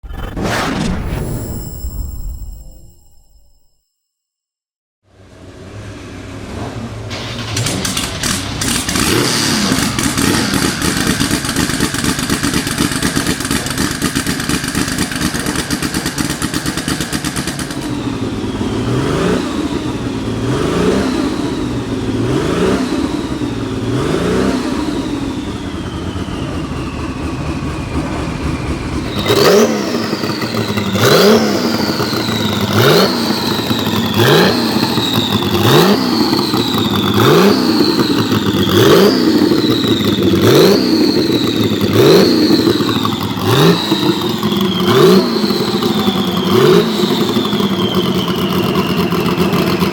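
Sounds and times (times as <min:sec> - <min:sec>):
race car engine idling and revving: 0:05.1 - 0:49.9
turbo whistle falling in pitch: 0:29.0 - 0:49.9.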